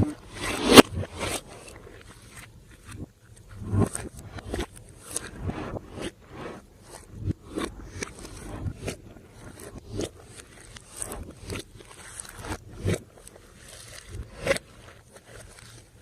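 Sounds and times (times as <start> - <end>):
sticky slime crackling: 6.8 - 16.0.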